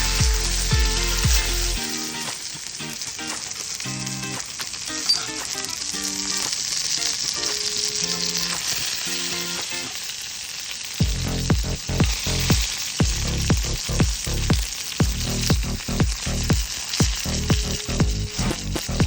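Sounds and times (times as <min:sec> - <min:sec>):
heavy regular beat: 0:00.0 - 0:02.4, 0:11.0 - 0:19.0
background music: 0:00.0 - 0:04.4
food sizzling in a pan: 0:00.0 - 0:19.0.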